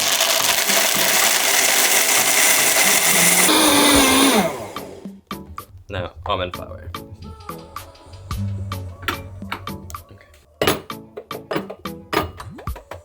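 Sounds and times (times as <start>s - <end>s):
blender grinding almonds: 0.0s - 5.1s
motor winding down whine: 0.2s - 5.0s.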